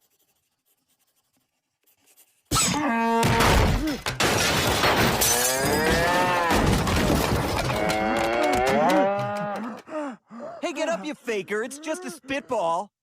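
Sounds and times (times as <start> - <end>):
cartoon character wailing: 10.6 - 12.8.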